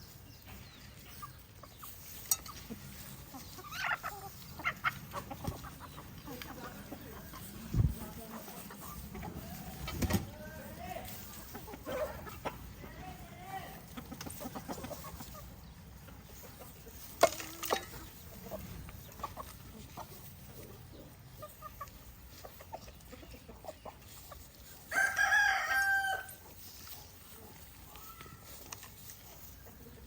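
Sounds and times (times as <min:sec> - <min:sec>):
chickens clucking: 0:00.0 - 0:30.0
rooster crowing: 0:24.9 - 0:26.3.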